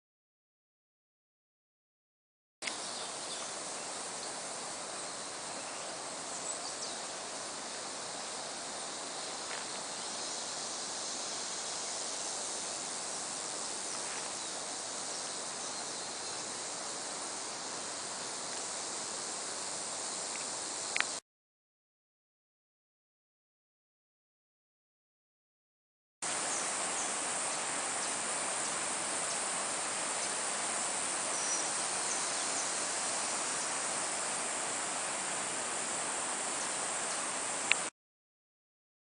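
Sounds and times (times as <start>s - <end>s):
high insect chorus hiss: 2.6s - 21.2s, 26.2s - 37.9s.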